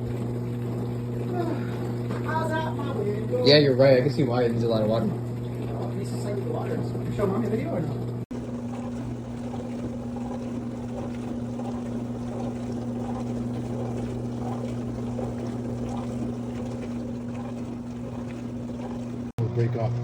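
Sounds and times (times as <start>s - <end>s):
dishwasher motor hum: 0.0s - 20.0s
water spraying inside dishwasher: 0.0s - 20.0s.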